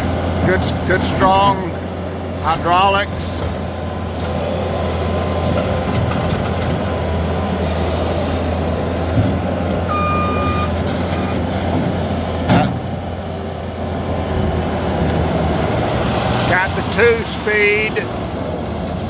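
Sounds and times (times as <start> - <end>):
diesel engine running: 0.0 - 19.0
short beep: 9.9 - 11.3.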